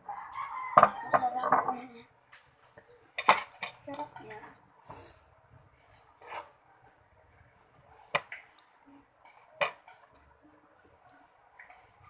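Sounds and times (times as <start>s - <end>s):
utensil scraping a plate: 5.9s - 6.6s.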